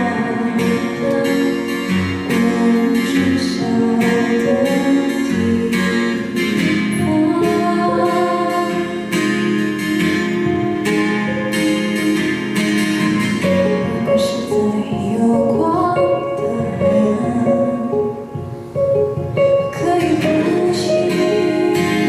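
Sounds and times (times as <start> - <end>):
person singing: 0.0 - 9.6, 13.4 - 18.3, 19.5 - 22.0
acoustic guitar accompaniment: 0.0 - 22.0.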